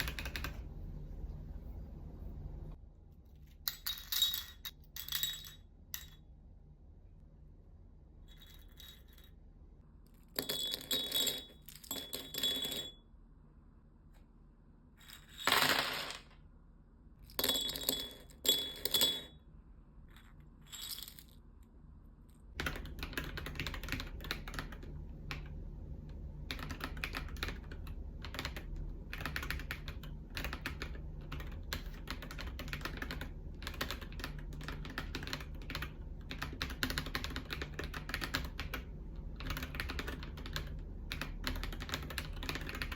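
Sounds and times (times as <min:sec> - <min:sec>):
fast typing on mechanical keyboard: 0:00.0 - 0:00.7, 0:22.6 - 0:25.5, 0:26.4 - 0:42.9
small hard parts clinking: 0:03.6 - 0:06.2.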